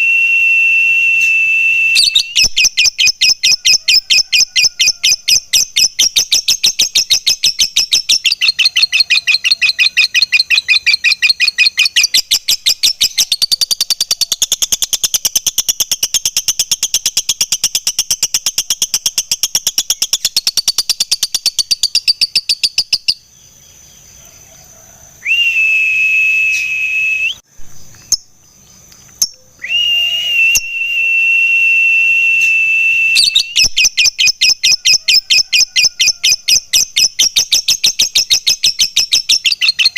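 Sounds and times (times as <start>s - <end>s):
high whistled bird notes: 0.0s - 23.3s, 25.2s - 28.3s, 29.2s - 39.9s
lovebird chattering: 2.0s - 23.3s, 33.2s - 39.9s.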